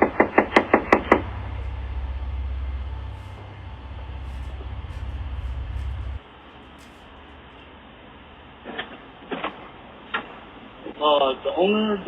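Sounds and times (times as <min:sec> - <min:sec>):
steady low rumble: 0:00.0 - 0:08.5.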